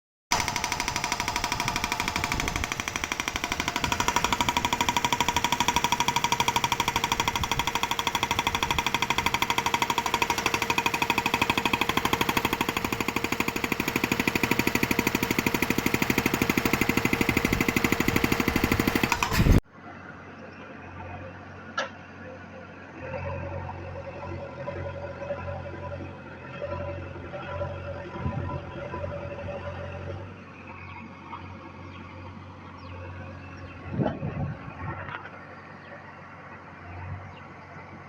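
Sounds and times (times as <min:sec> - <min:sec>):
hydraulic rock breaker hammering: 0:00.3 - 0:19.6.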